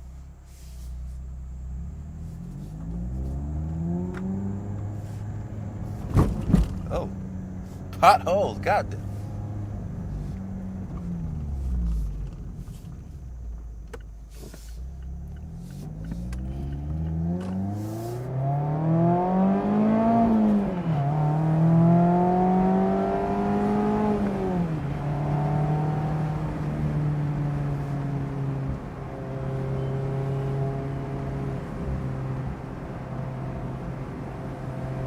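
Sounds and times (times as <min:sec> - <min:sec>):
car engine through the gears: 0:00.0 - 0:35.0
knocks from rough road: 0:06.0 - 0:06.9.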